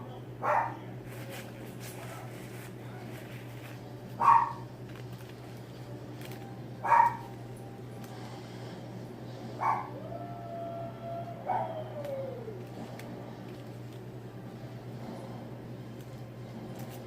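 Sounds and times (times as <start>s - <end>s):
dog barking: 0.4s - 0.8s, 4.2s - 4.6s, 6.8s - 7.2s, 9.6s - 10.0s.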